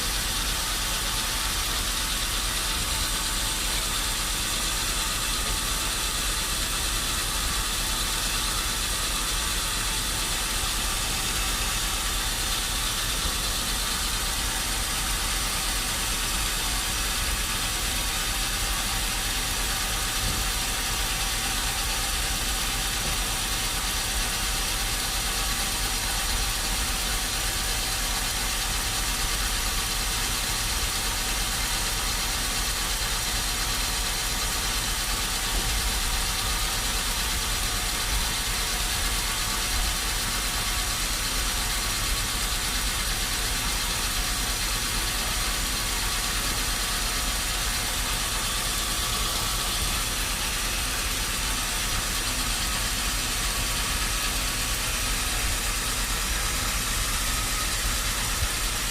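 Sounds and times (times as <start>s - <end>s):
machinery running steadily: 0.0s - 58.9s.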